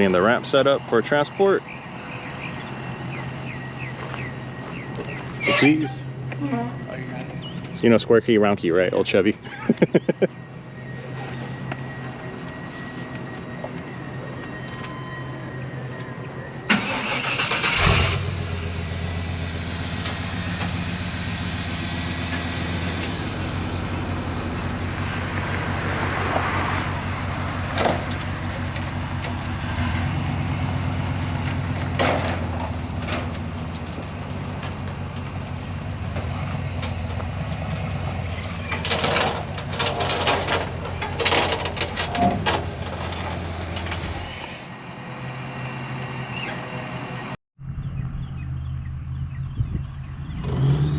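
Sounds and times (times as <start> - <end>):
pickup engine cranking and idling: 16.7 - 25.5, 30.4 - 44.1
knocks and rattles: 36.1 - 44.2.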